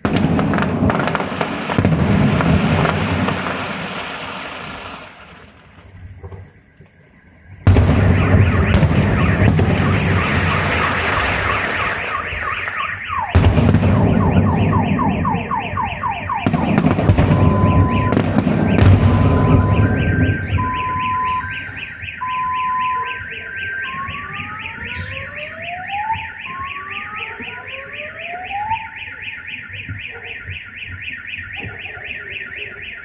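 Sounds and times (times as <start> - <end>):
fireworks banging: 0.0 - 7.0, 7.6 - 33.0
car alarm siren: 0.0 - 33.0.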